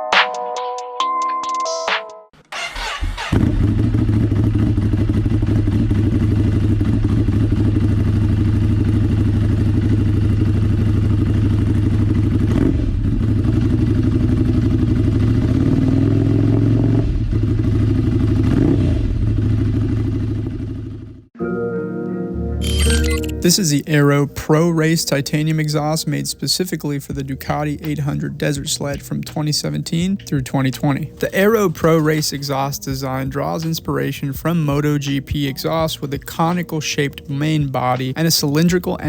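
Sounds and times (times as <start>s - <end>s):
motorcycle engine idling and revving: 2.5s - 21.4s.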